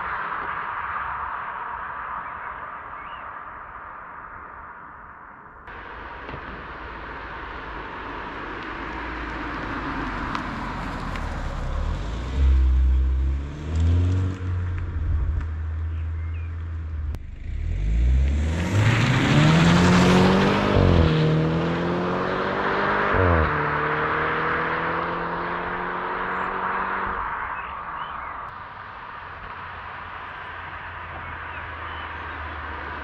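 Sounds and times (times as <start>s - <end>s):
car engine accelerating hard: 5.7s - 28.2s.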